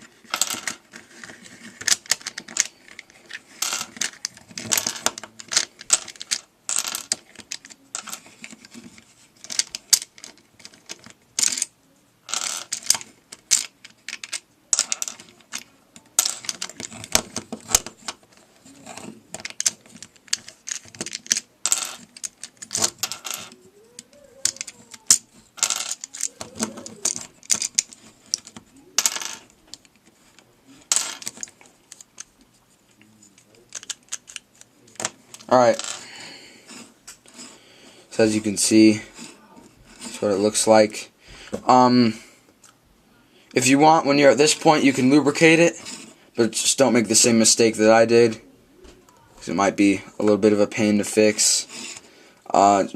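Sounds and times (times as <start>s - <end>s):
plastic puzzle pieces clicking: 0.3s - 11.7s, 12.3s - 32.5s, 33.2s - 36.0s.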